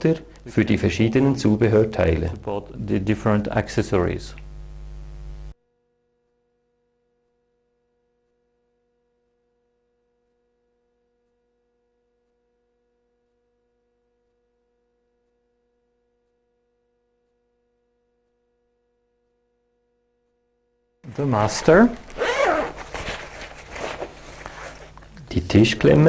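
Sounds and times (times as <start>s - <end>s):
faint steady hum: 0.0s - 5.6s, 21.0s - 26.0s.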